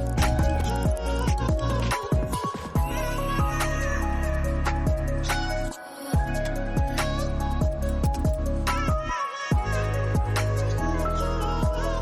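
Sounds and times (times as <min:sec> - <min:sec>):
kick drum: 0:00.0 - 0:03.6, 0:04.9 - 0:05.1, 0:06.2 - 0:07.0, 0:07.6 - 0:10.4, 0:11.6 - 0:11.9
electronic music with synth: 0:00.0 - 0:12.0.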